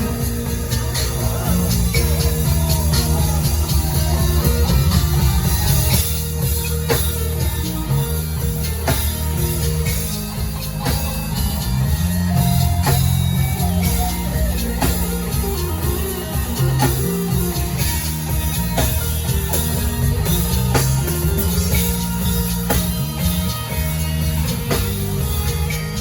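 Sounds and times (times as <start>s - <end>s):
bass line: 0.0s - 26.0s
drum kit: 0.0s - 26.0s
electric guitar: 0.0s - 26.0s.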